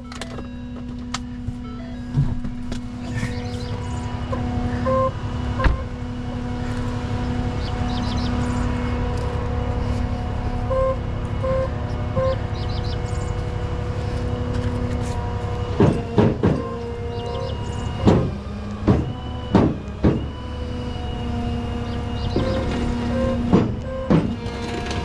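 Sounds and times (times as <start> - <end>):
heavy truck engine running: 0.0 - 25.0
short beeps: 10.7 - 12.4.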